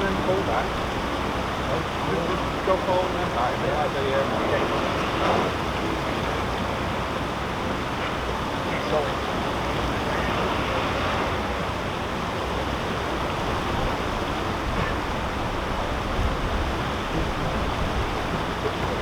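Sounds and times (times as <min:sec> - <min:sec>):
water rushing: 0:00.0 - 0:19.0.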